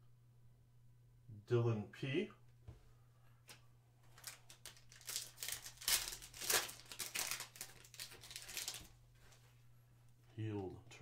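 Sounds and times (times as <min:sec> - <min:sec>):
wrapper tearing and crinkling: 0:04.2 - 0:08.9.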